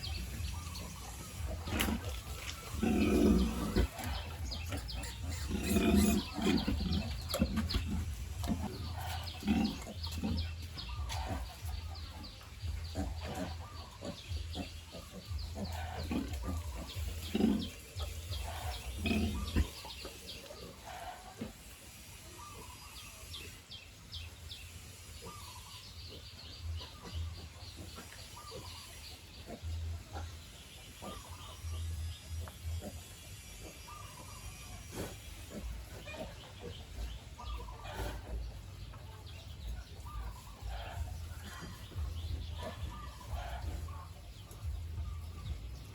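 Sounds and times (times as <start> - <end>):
piglets squeaking: 0.0 - 21.1, 26.8 - 45.9
sow grunting: 1.4 - 11.9, 12.8 - 20.0.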